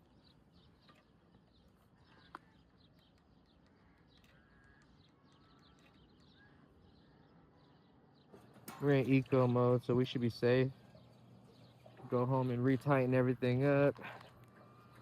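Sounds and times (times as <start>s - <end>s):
faint bird chirping: 0.0s - 15.0s.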